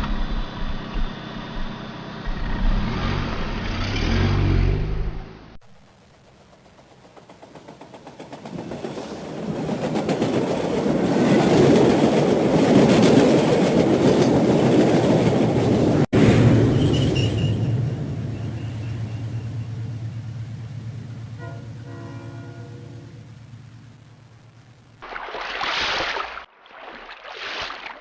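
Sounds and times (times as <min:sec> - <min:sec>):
vehicle engine running: 0:00.0 - 0:06.6.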